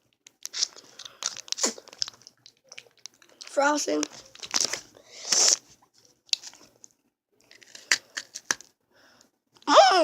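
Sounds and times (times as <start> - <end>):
wrapper rustle: 3.9 - 6.7.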